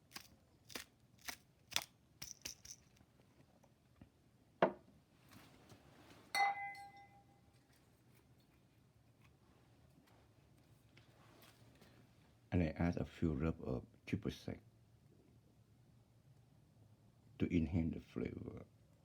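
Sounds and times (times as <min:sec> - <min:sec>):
kitchen items clicking: 0:00.1 - 0:03.0
ringing glass clink: 0:06.4 - 0:07.4.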